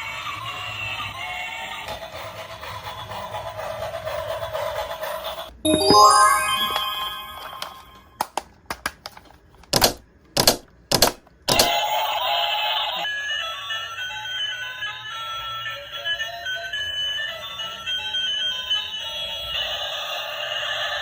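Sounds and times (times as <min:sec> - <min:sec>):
tinny electronic beeping tune: 0:05.7 - 0:08.1.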